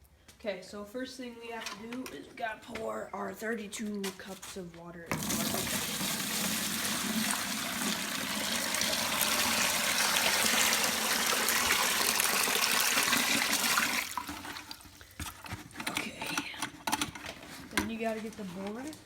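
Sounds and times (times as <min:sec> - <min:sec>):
water pouring into bucket: 0:05.1 - 0:15.1.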